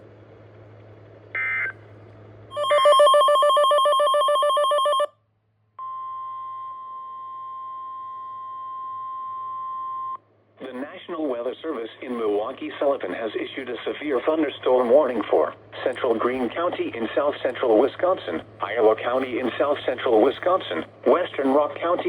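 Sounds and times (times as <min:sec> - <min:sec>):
steady single alert tone: 0:02.5 - 0:05.1
warbling alarm tone: 0:02.5 - 0:05.1.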